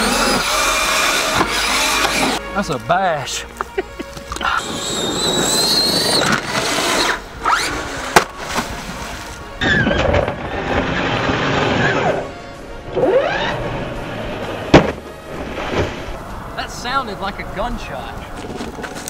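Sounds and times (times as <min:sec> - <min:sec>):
electric motor whining: 0:00.0 - 0:02.5, 0:04.2 - 0:08.2
background music: 0:00.0 - 0:19.0.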